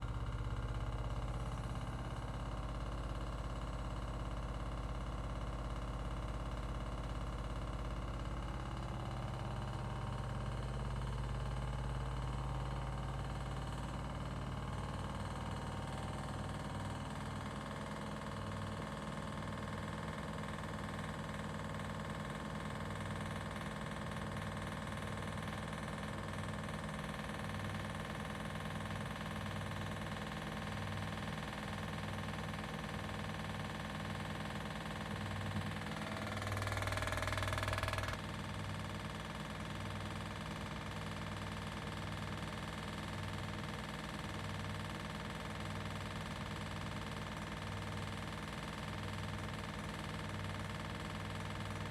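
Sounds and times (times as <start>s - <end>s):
washing machine spinning: 0.0s - 51.9s
fast even rattle: 35.8s - 38.2s.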